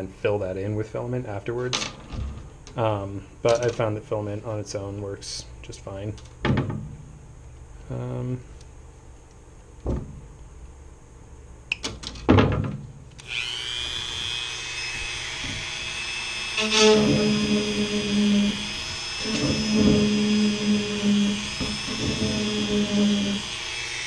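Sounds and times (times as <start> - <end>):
lower hum under whine: 0.0 - 24.0
rotary tool high whine: 13.2 - 24.0.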